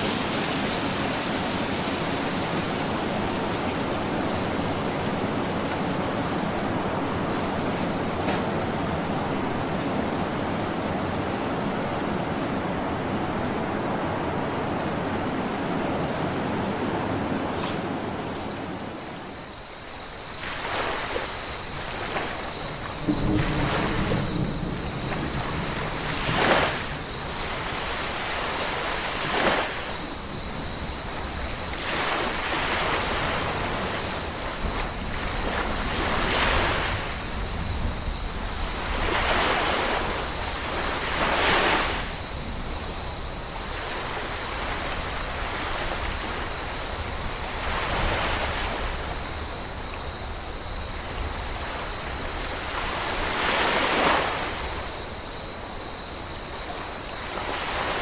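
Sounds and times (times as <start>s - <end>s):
ocean waves breaking: 0.0s - 19.5s, 20.2s - 58.0s.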